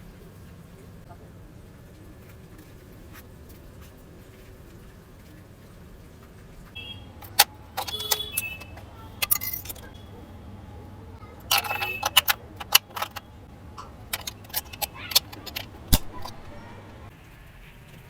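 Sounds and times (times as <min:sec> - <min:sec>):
low steady hum: 0:00.0 - 0:17.1
small hard objects clattering: 0:07.2 - 0:10.0, 0:11.4 - 0:16.8.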